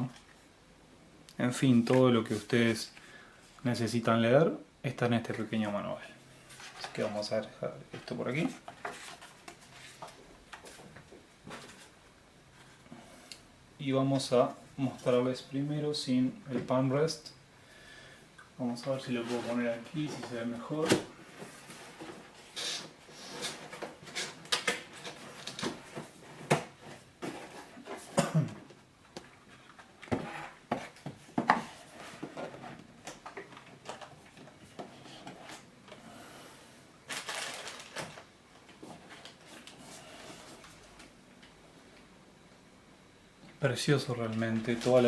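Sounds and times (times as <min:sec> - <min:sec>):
packaging rustling: 0:37.1 - 0:39.9.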